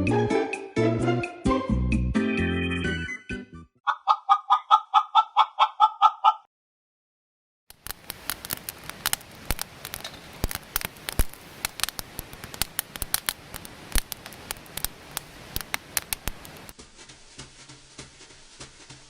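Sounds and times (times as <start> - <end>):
wood fire crackling and popping: 7.7 - 18.2
light steady hiss: 7.7 - 19.0.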